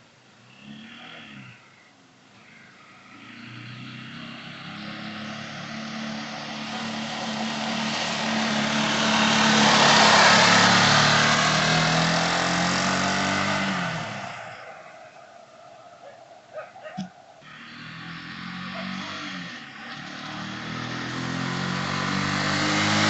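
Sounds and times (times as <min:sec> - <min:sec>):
rushing noise: 0:05.4 - 0:16.6.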